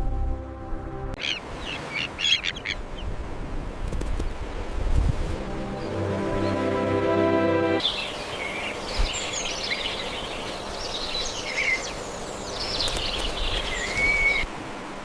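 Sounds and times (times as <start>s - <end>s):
outdoor background hiss: 0.3s - 15.0s
birds chirping and singing: 7.8s - 14.4s.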